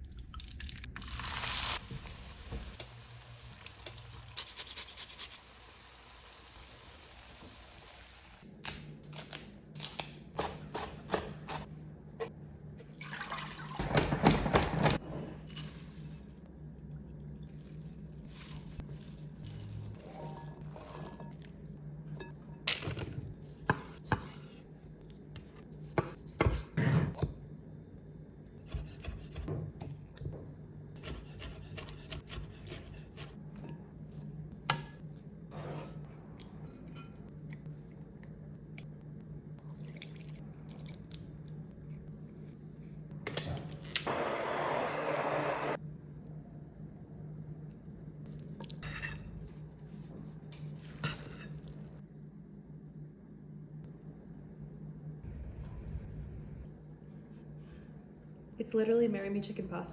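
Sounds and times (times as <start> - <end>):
steady low hum: 45.5 - 59.0.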